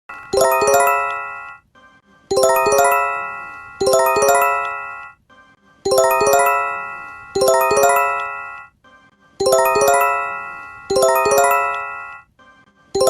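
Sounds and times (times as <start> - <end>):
emergency alert bell chime: 0.1 - 1.6, 2.3 - 5.2, 5.9 - 8.7, 9.4 - 12.3.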